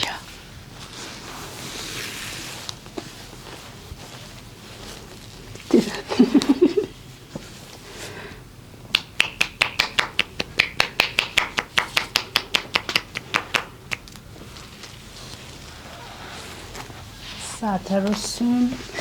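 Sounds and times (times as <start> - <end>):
hands slapping body: 8.9 - 14.1.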